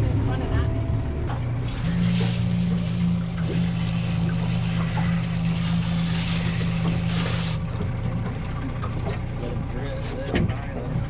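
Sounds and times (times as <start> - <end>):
wind: 0.0 - 5.0, 6.4 - 11.0
motorboat engine running: 0.0 - 11.0
water noise: 1.3 - 9.8.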